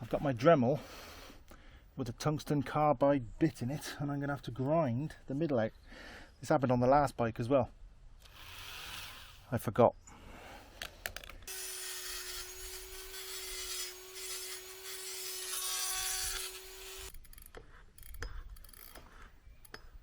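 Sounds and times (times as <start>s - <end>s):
rotary tool grinding metal: 8.2s - 9.5s, 11.5s - 20.0s.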